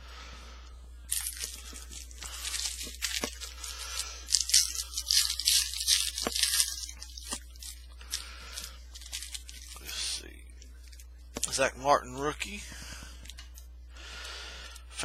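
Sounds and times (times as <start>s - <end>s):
foil wrapper tearing and crinkling: 1.2s - 9.8s.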